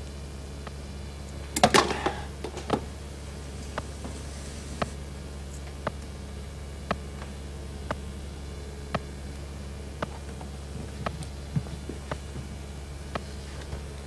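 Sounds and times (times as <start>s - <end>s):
low electronic hum: 0.0s - 14.0s
timer ticking: 6.8s - 7.2s, 8.9s - 9.2s.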